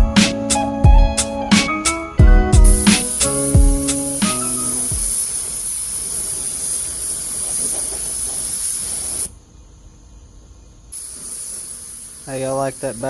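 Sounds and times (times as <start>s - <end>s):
spray gun hissing: 2.6s - 9.3s, 10.9s - 13.0s.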